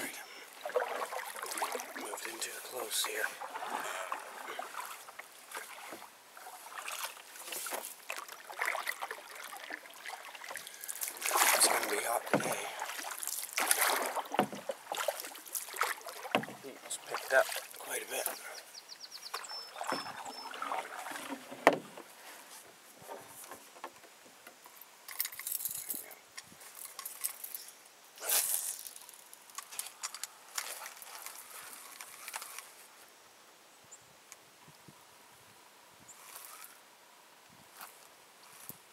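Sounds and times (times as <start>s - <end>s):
water lapping around a boat: 0.0s - 23.8s
light splashes: 0.4s - 18.6s, 19.3s - 22.1s
fishing tackle clicking and rustling: 24.6s - 32.8s.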